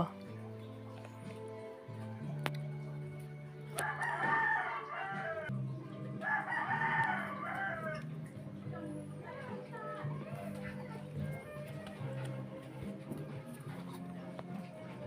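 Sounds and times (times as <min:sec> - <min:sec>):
faint background music: 0:00.0 - 0:15.0
rooster crowing: 0:03.8 - 0:05.5, 0:06.2 - 0:08.1.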